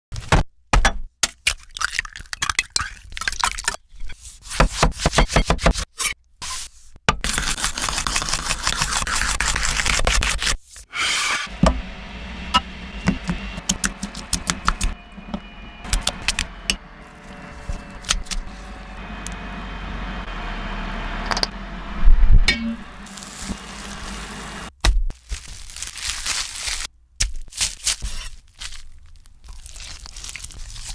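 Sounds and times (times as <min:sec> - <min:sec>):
utensils and food scraping: 0:04.1 - 0:19.6, 0:22.5 - 0:24.7
loud thump: 0:11.6 - 0:11.9.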